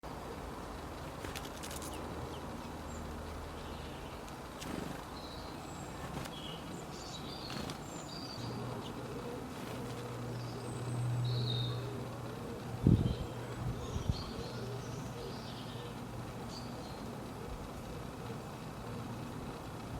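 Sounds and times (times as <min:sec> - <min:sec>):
small birds chirping: 0:00.1 - 0:19.9
low steady drone: 0:06.6 - 0:19.9.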